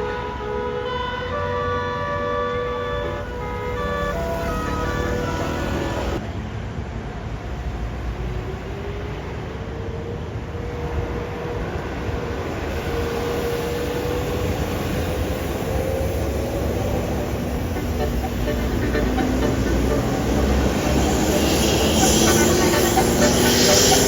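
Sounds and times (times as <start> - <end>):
large vehicle rumbling past: 0.0 - 24.0
faint rising engine tone: 2.7 - 6.2, 13.4 - 24.0.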